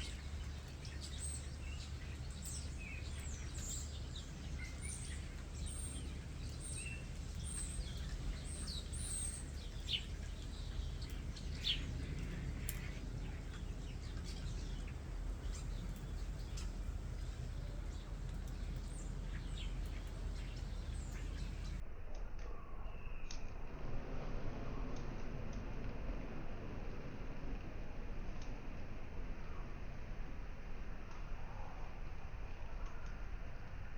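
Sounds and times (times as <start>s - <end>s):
starlings whistling and chirping: 0.0s - 21.8s
steady low background rumble: 0.0s - 21.8s.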